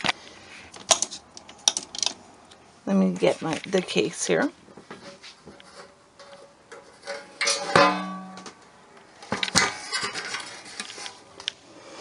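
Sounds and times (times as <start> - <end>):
metal case clanking: 6.2 - 8.6.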